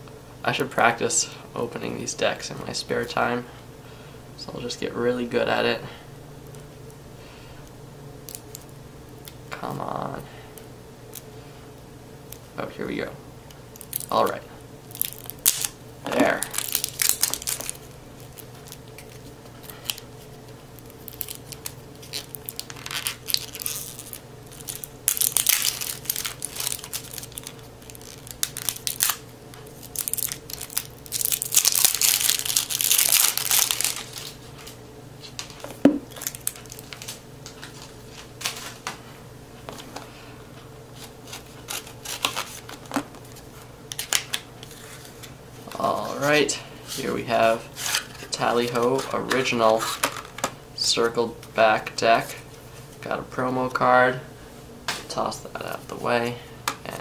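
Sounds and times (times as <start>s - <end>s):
cellophane tearing and crinkling: 13.7s - 38.8s, 41.0s - 46.3s, 47.8s - 50.5s.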